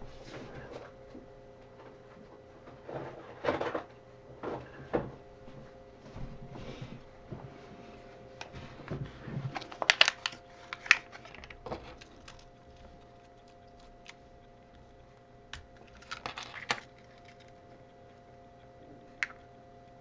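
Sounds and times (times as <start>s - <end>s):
plastic and metal parts clicking: 9.5s - 14.2s, 15.5s - 17.6s.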